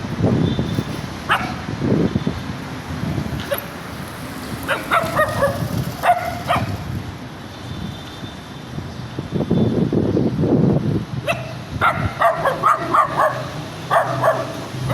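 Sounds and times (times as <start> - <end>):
small dog yipping and barking: 1.3 - 1.6, 4.7 - 6.8, 11.2 - 14.9.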